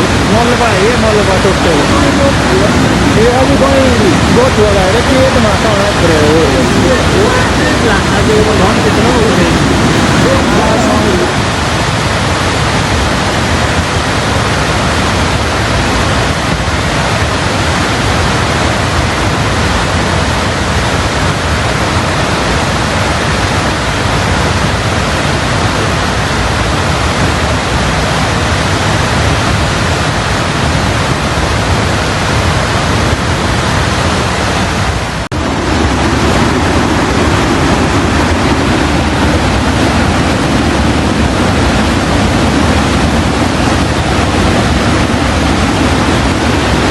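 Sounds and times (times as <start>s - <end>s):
river rushing loudly: 0.0s - 46.9s.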